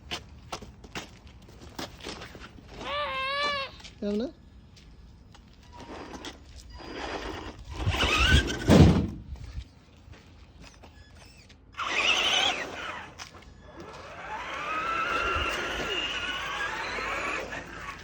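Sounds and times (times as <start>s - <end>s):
electric motor whining: 5.9s - 8.7s, 11.2s - 18.0s
hard thunk: 8.5s - 9.2s.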